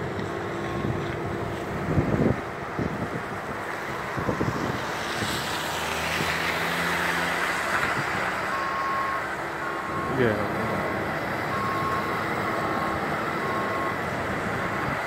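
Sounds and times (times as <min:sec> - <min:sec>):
road noise: 0:00.0 - 0:15.0
reversing alarm beeping: 0:03.9 - 0:04.9, 0:08.5 - 0:10.4, 0:11.4 - 0:14.8.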